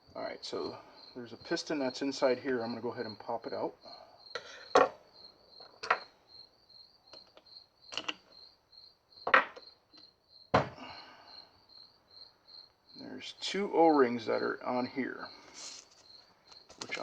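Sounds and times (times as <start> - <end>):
crickets chirping: 0.0 - 17.0
metal parts clicking and knocking: 7.2 - 8.3.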